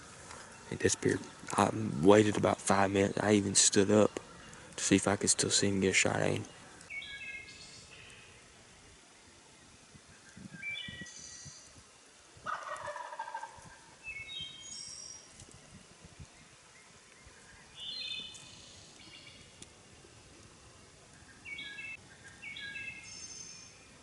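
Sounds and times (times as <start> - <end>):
turkey gobbling: 12.4 - 13.9.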